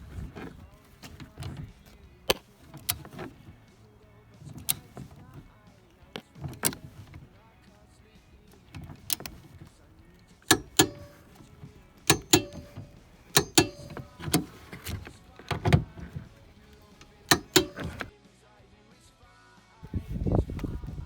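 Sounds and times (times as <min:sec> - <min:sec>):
sharp clicks and knocks: 0:00.0 - 0:03.7, 0:04.4 - 0:05.5, 0:06.1 - 0:07.4, 0:08.4 - 0:18.1.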